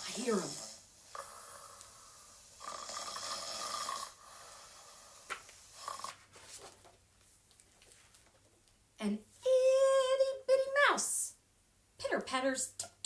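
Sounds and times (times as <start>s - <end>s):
mock snore: 0.0s - 6.2s.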